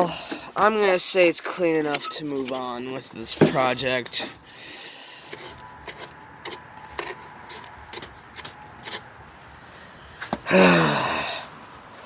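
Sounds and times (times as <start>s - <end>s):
person groaning: 10.5s - 11.6s.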